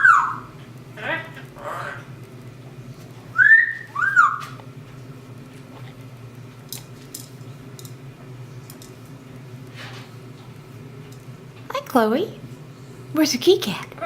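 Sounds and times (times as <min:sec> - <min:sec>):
parrot whistling: 0:00.0 - 0:00.5, 0:03.3 - 0:04.6
steady low hum: 0:00.0 - 0:14.0.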